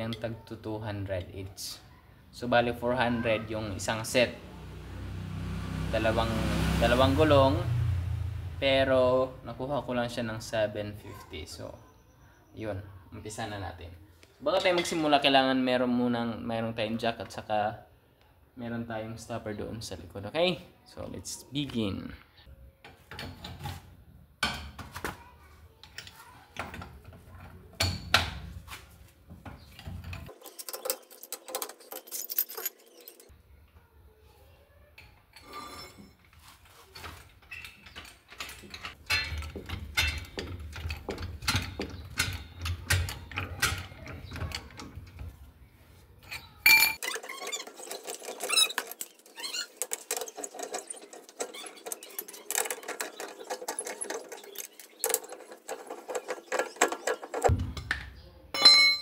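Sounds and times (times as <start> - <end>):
hand tools clattering on metal: 29.4 - 33.3, 35.3 - 45.4, 46.2 - 58.0, 58.6 - 59.0.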